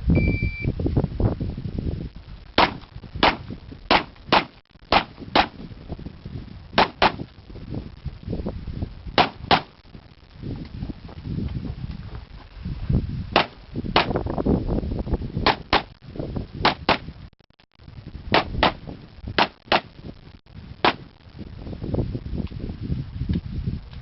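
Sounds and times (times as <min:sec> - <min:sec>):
pistol shots: 0:06.8 - 0:07.2.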